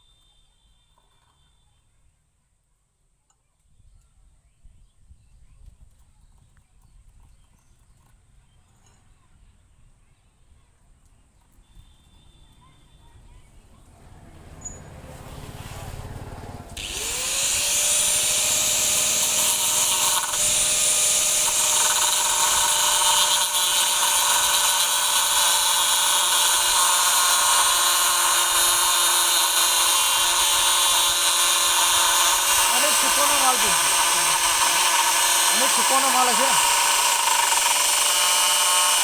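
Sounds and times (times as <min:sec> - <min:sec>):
power tool motor running: 0:16.8 - 0:39.0.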